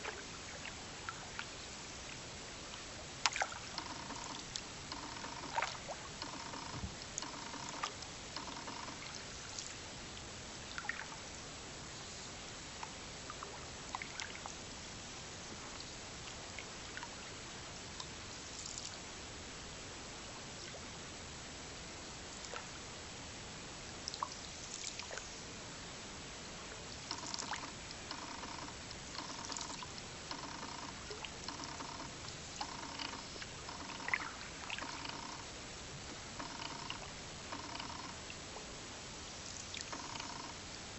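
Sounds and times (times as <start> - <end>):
water trickling and splashing: 0.0 - 11.4, 13.3 - 14.6, 23.9 - 25.4, 26.7 - 35.2
repeated animal call: 3.7 - 9.2, 27.1 - 35.5, 36.1 - 38.2, 39.8 - 40.6.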